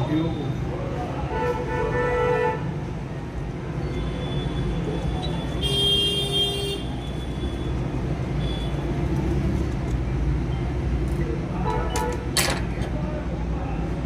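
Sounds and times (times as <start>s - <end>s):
road traffic rumble: 0.0s - 14.0s
vehicle horn: 5.6s - 6.9s.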